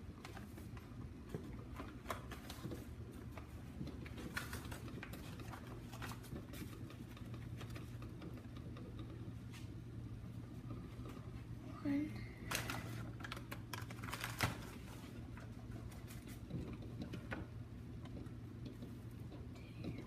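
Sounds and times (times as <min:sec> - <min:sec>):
low steady hum: 0:00.0 - 0:20.0.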